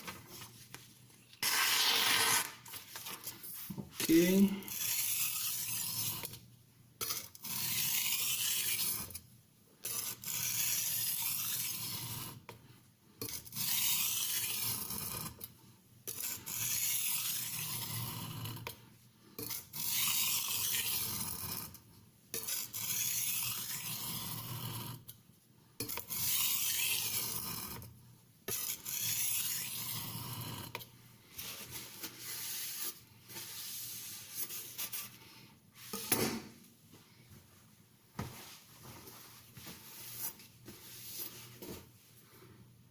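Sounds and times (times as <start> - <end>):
knife scraping on oilstone: 1.4 - 2.6, 4.7 - 6.4, 7.0 - 9.2, 9.8 - 12.4, 13.2 - 15.5, 16.1 - 18.8, 19.4 - 25.2, 25.8 - 27.9, 28.5 - 35.2.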